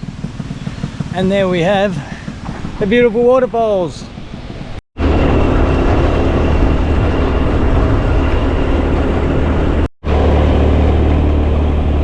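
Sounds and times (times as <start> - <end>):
scooter engine and road noise: 0.0 - 12.0
wind rumble on microphone: 4.0 - 12.0.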